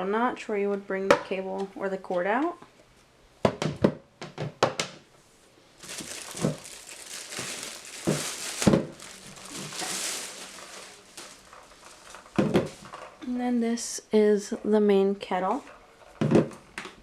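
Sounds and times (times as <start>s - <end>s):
plastic packaging crinkling: 5.8s - 13.2s.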